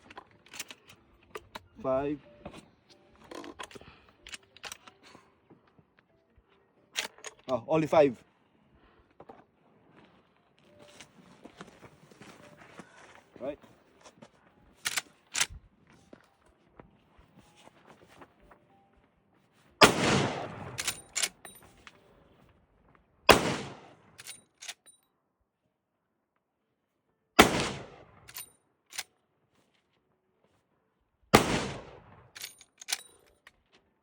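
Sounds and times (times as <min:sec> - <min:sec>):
rifle lever metallic clicks: 0:00.0 - 0:01.6, 0:03.2 - 0:05.0, 0:07.0 - 0:07.6, 0:14.8 - 0:15.6, 0:20.7 - 0:21.7, 0:24.2 - 0:25.0, 0:28.3 - 0:29.1, 0:32.4 - 0:33.5
rifle shots with echo: 0:19.8 - 0:21.4, 0:23.3 - 0:24.0, 0:27.4 - 0:28.4, 0:31.3 - 0:32.3.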